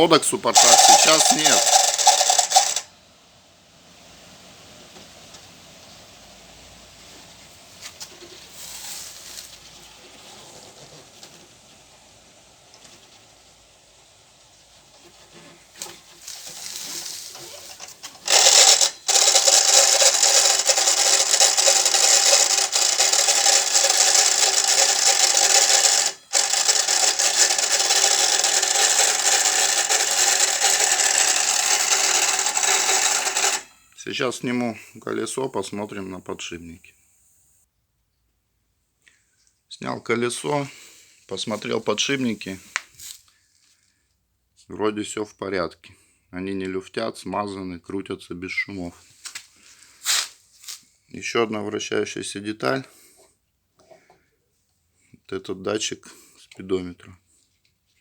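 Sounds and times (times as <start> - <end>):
angle grinder spinning wheel: 0.0 - 2.9, 15.4 - 33.7
faint handling sounds: 15.0 - 33.7, 40.3 - 44.1, 48.9 - 51.0.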